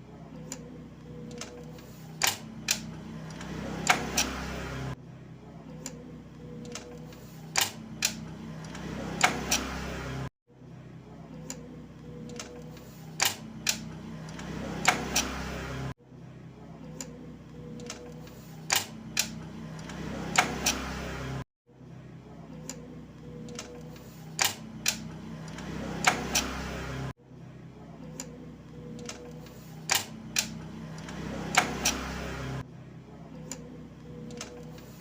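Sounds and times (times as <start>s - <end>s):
gear lever clicks and clunks: 0.5s - 4.4s, 6.6s - 9.8s, 12.2s - 15.4s, 17.8s - 20.9s, 23.5s - 26.6s, 28.9s - 32.1s, 34.2s - 35.0s.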